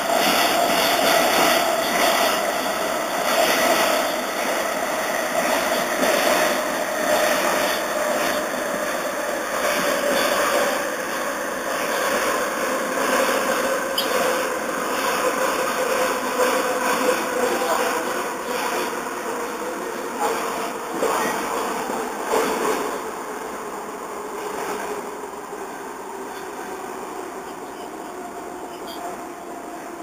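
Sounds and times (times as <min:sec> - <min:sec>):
train motors and wheels on rails: 0:00.0 - 0:30.0.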